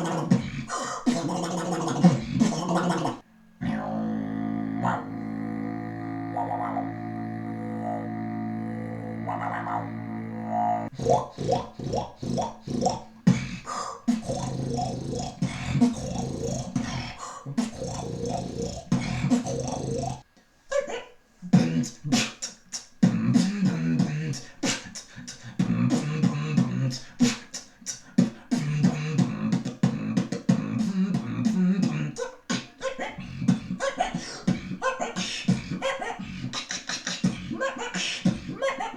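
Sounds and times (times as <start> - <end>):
beatboxing clicks and pops: 0.0 - 3.2, 10.9 - 20.5, 21.5 - 38.9
low droning vocal tone: 0.0 - 20.2, 23.0 - 38.8
sung bass tones: 3.6 - 13.5.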